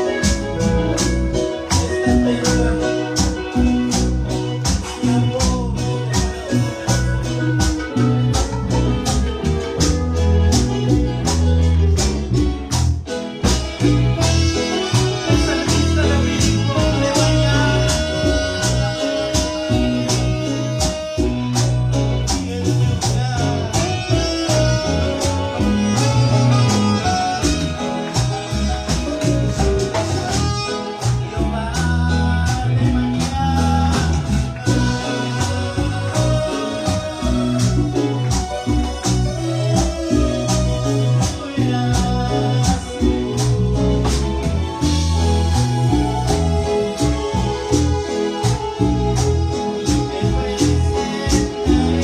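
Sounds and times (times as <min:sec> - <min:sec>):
bass: 0:00.0 - 0:52.0
guitar: 0:00.0 - 0:52.0
percussion beat: 0:00.0 - 0:52.0.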